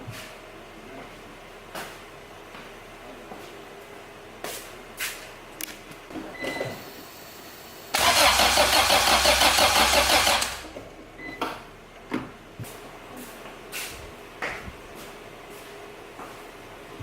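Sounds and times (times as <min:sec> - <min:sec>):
engine cranking by starter: 0:07.9 - 0:10.7.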